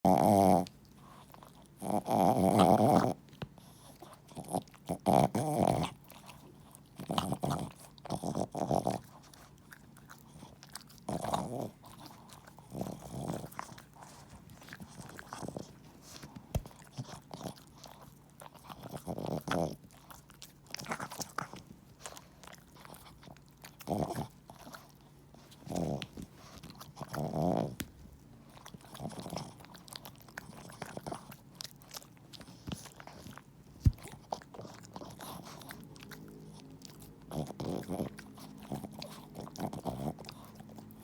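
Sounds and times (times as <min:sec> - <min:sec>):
dog snoring: 0:00.0 - 0:00.8, 0:01.8 - 0:06.2, 0:06.9 - 0:09.1, 0:10.6 - 0:14.2, 0:18.5 - 0:19.8, 0:25.6 - 0:27.9, 0:28.8 - 0:29.8, 0:34.0 - 0:41.0.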